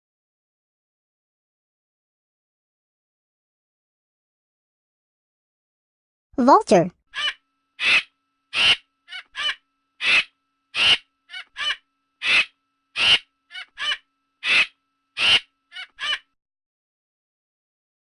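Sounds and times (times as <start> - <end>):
vulture harsh caws: 7.2 - 16.3.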